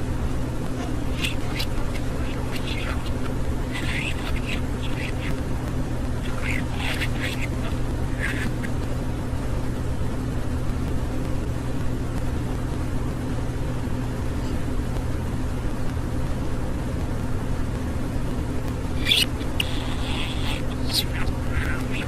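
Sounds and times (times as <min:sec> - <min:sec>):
steady low hum: 0:00.0 - 0:22.0
budgie chirp: 0:00.3 - 0:09.4, 0:18.7 - 0:22.0.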